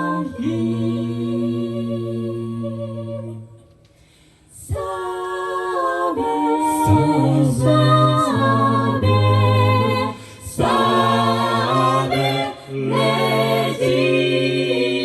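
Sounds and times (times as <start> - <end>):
a cappella group singing: 0.0 - 15.0.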